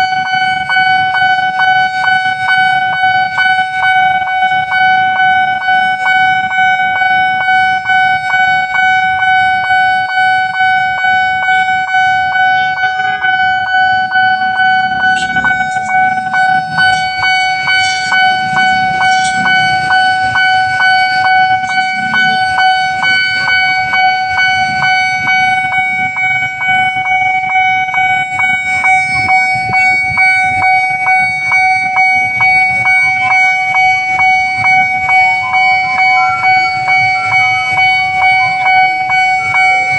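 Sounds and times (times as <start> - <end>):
level crossing alarm tone pulsing: 0.0 - 39.9.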